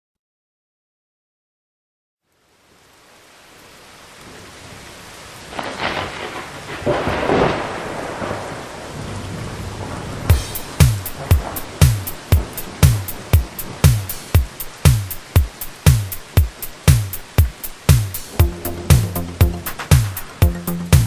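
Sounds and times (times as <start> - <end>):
rain: 2.2 - 21.0
thunder rolls: 5.5 - 16.6, 18.3 - 21.0
kick drum beat: 10.3 - 21.0.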